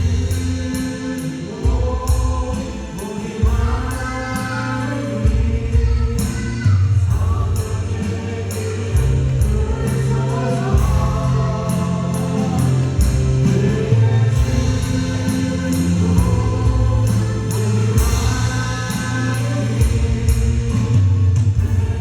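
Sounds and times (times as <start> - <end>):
held bass line: 0.0 - 2.7, 3.4 - 22.0
acoustic guitar: 0.0 - 22.0
drum kit: 0.0 - 22.0
keyboards: 0.0 - 22.0
person singing: 0.0 - 22.0
cymbal strokes: 6.2 - 21.0.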